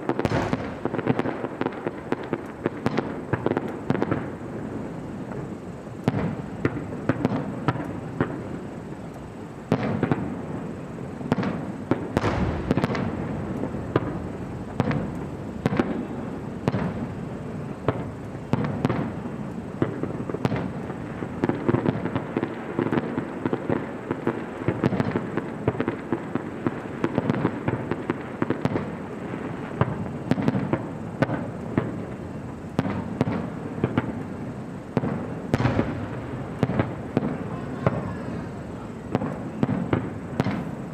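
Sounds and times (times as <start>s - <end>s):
deep firework boom: 0.0s - 1.7s, 11.3s - 17.1s
fireworks bangs and crackling: 0.0s - 40.9s.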